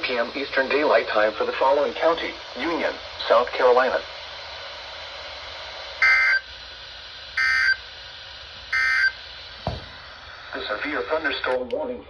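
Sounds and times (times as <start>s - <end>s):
radio hiss: 0.0s - 9.4s.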